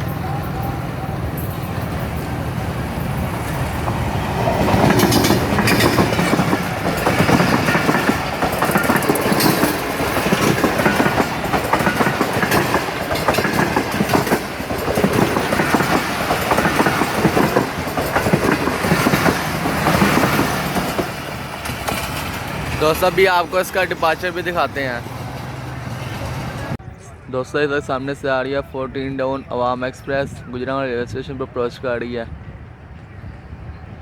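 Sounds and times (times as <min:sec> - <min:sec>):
train wheels clacking over rail joints: 0:00.0 - 0:26.8.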